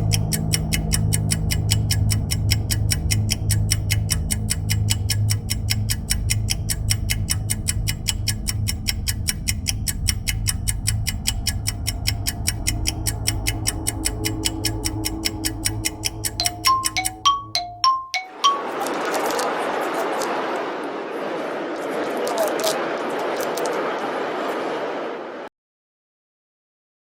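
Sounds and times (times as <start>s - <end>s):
fast ticking beat: 0.0s - 19.4s
low drone: 11.4s - 16.5s.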